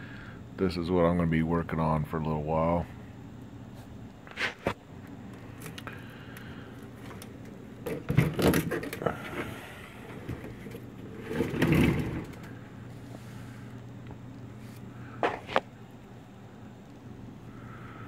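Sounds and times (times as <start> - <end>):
steady low hum: 0.0 - 18.0
scraping and rattling: 7.0 - 12.6.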